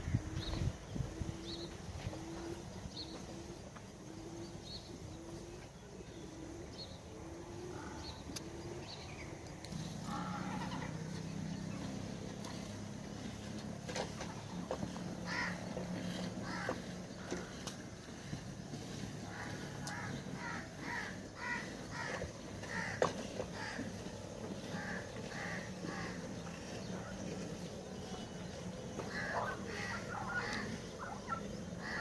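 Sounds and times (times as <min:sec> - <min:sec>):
steady low hum: 0:00.0 - 0:32.0
crows cawing: 0:10.0 - 0:11.1, 0:15.2 - 0:18.3, 0:19.2 - 0:26.2, 0:29.0 - 0:32.0.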